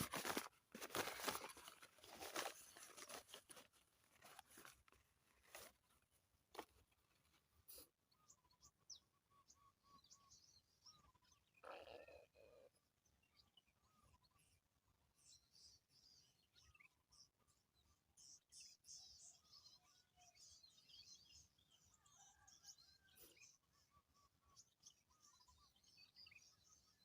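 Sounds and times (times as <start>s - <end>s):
rustling and crackling: 0.0s - 7.4s
small birds chirping: 0.0s - 27.0s.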